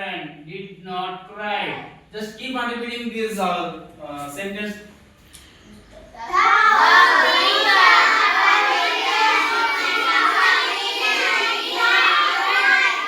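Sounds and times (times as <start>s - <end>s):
children reciting in unison: 6.1s - 13.0s.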